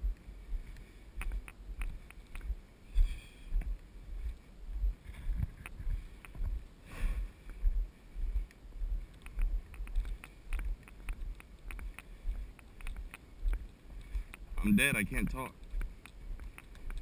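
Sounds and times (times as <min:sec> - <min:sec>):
sharp ticks: 0:00.1 - 0:03.8, 0:05.6 - 0:06.5, 0:08.4 - 0:17.0.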